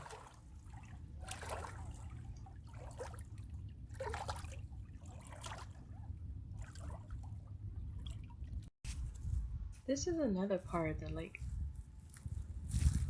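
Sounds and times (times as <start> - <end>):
water lapping at shoreline: 0.0 - 8.7
steady low rumble: 0.0 - 13.0.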